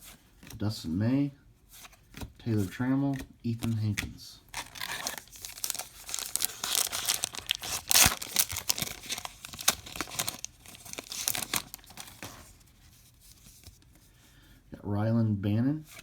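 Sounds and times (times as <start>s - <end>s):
wrapper tearing and crinkling: 4.5s - 12.5s.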